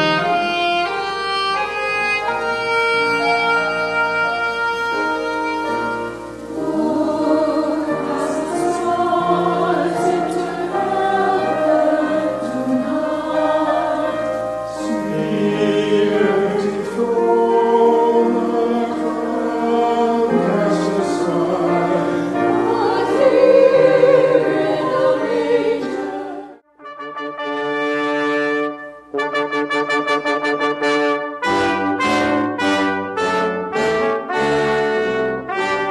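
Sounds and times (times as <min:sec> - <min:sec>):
choir singing: 0:00.0 - 0:26.7.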